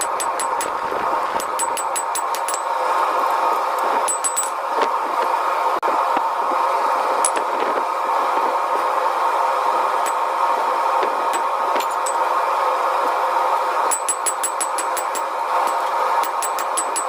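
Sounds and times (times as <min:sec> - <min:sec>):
hammer striking steel on anvil: 0:00.0 - 0:00.8, 0:01.4 - 0:02.7, 0:04.0 - 0:04.6, 0:13.9 - 0:17.0
continuous steady roar: 0:00.0 - 0:17.0.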